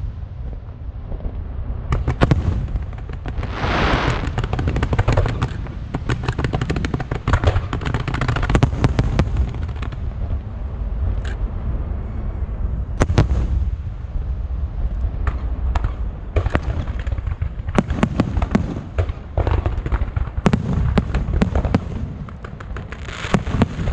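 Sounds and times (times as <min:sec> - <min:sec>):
fireworks bangs: 0:00.0 - 0:10.4, 0:13.0 - 0:14.0, 0:15.2 - 0:23.9
crackling hiss of fireworks: 0:00.0 - 0:23.9
low rumble: 0:08.6 - 0:17.8.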